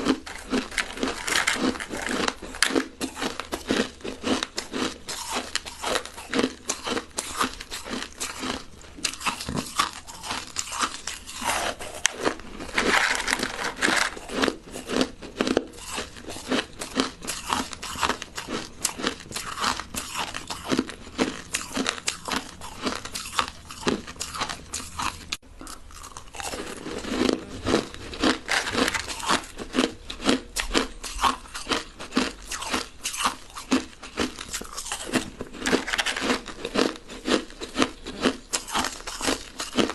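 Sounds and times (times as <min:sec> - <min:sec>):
chewing crushed ice: 0:00.0 - 0:39.9.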